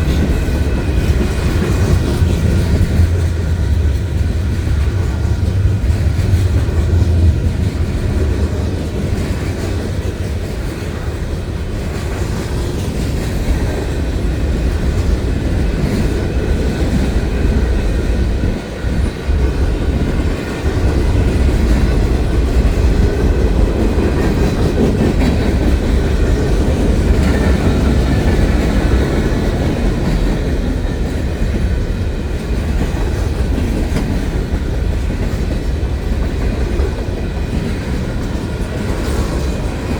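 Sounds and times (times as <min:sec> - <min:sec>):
train rumbling past on rails: 0:00.0 - 0:39.9.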